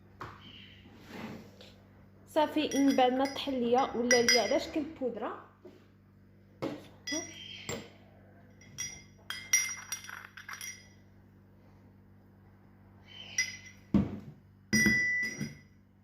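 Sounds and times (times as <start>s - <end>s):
kitchen utensils clinking: 2.6s - 4.8s, 8.6s - 10.9s.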